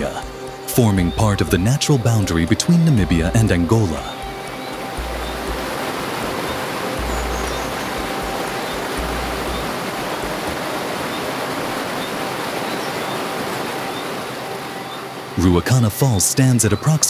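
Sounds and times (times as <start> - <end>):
waterfall rushing: 0.0 - 17.0.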